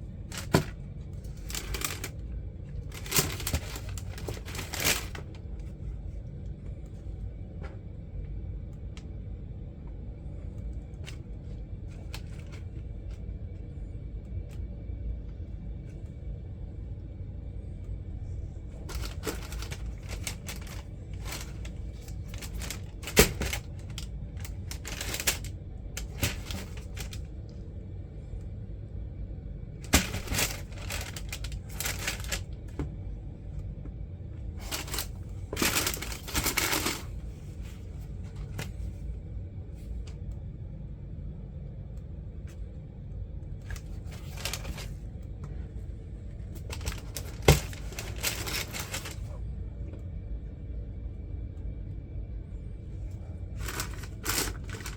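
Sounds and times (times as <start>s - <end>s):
steady low rumble: 0.0s - 54.9s
box and packaging rustling: 0.3s - 5.5s, 18.8s - 27.3s, 29.9s - 32.9s, 34.6s - 39.0s, 43.7s - 45.0s, 46.5s - 49.4s, 53.5s - 54.9s.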